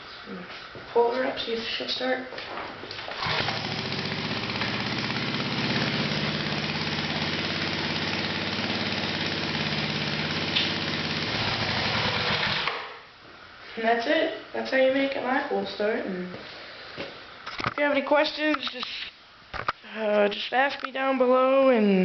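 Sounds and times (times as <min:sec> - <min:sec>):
small engine pull-started: 0:03.1 - 0:12.9
small engine running: 0:03.2 - 0:12.8.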